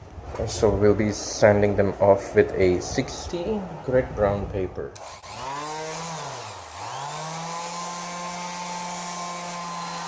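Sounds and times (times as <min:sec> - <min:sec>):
electric sander on wood: 0:05.0 - 0:10.0.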